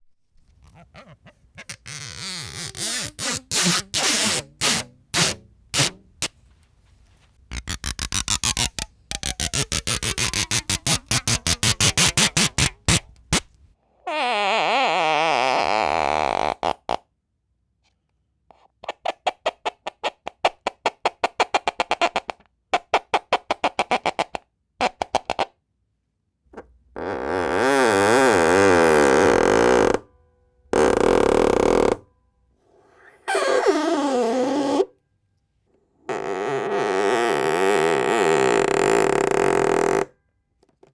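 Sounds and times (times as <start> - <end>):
tape creaking between fingers: 0.4 - 6.5, 7.2 - 13.6, 26.6 - 30.1, 30.8 - 32.1, 33.0 - 34.9, 36.1 - 40.9.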